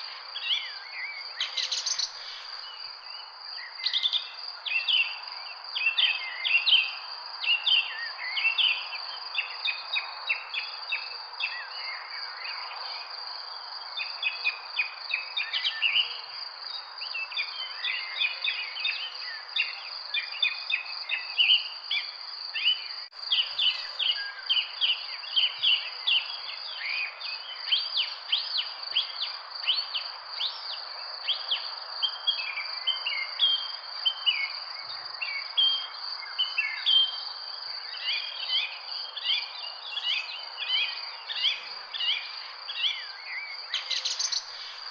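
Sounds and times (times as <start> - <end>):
high insect drone: 0.0 - 6.5, 9.4 - 44.9.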